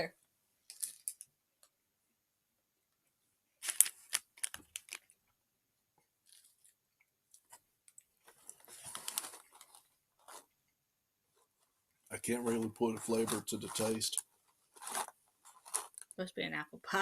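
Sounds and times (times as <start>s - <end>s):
wafer snack packaging crinkling: 3.6s - 5.1s, 8.2s - 10.4s, 12.3s - 16.2s.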